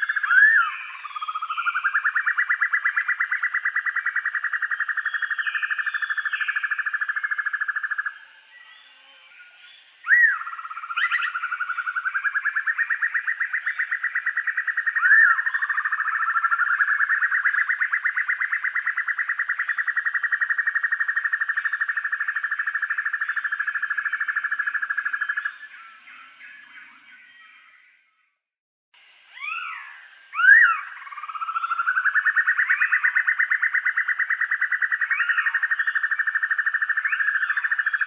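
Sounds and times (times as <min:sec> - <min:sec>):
bird trilling: 0:00.0 - 0:08.1, 0:10.0 - 0:20.5, 0:29.3 - 0:38.0
bird calling with sharp notes: 0:00.0 - 0:09.0, 0:09.7 - 0:28.1, 0:29.3 - 0:38.0.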